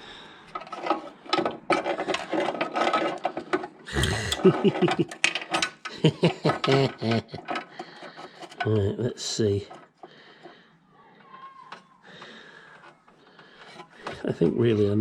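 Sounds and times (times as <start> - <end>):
person muttering: 3.9 - 5.0.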